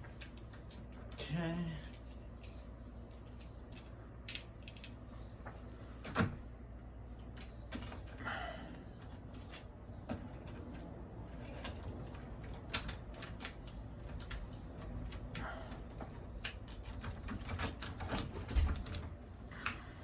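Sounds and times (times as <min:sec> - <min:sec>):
door lock clicking and rattling: 0:09.0 - 0:19.4.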